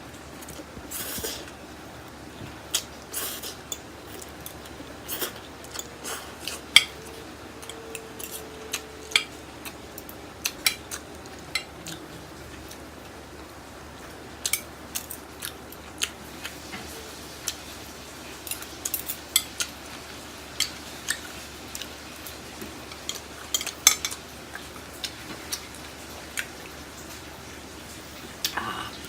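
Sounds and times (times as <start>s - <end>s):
utensils clinking against bowl: 2.8s - 12.0s, 22.9s - 24.2s.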